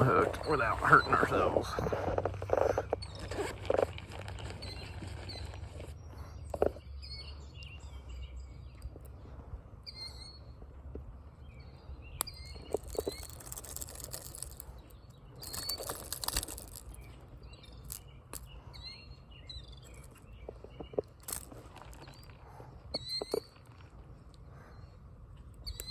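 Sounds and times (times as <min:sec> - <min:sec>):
rustling and clicking: 0:00.0 - 0:06.8, 0:12.2 - 0:18.6
small birds chirping: 0:00.0 - 0:25.9.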